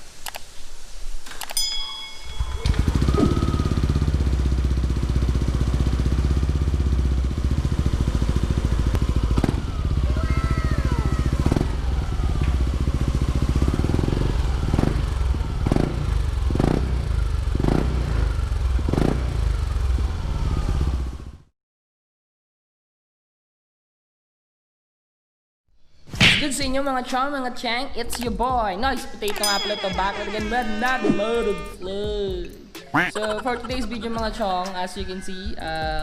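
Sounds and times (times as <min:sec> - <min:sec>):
scooter engine idling and revving: 0:02.6 - 0:21.5, 0:33.0 - 0:36.0.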